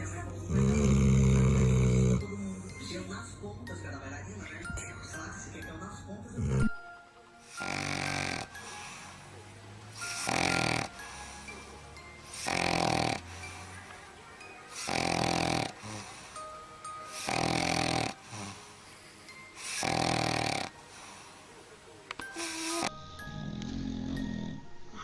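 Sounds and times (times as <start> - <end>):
dog snoring: 0.0 - 2.9, 6.3 - 13.9, 14.7 - 18.8, 19.5 - 21.4, 22.2 - 25.0.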